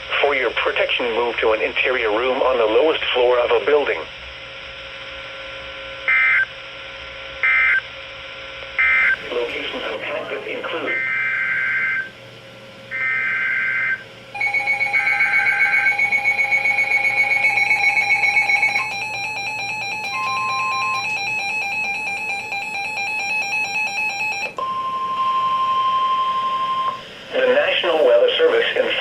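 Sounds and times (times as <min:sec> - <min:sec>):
steady warning alarm tone: 0:05.6 - 0:07.9, 0:08.7 - 0:29.0
pulsing beep alarm: 0:06.1 - 0:06.5, 0:07.4 - 0:07.8, 0:08.8 - 0:09.2, 0:10.9 - 0:12.1, 0:12.9 - 0:27.0
shrill two-tone digital header bursts: 0:08.8 - 0:09.2, 0:12.9 - 0:24.4.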